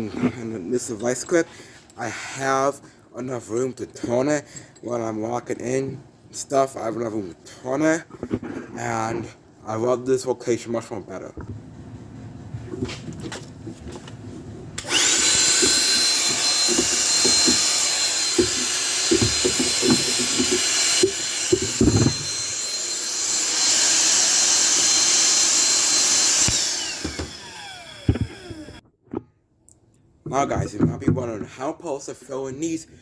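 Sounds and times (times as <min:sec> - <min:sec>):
shop vacuum motor whine: 0:14.8 - 0:28.8.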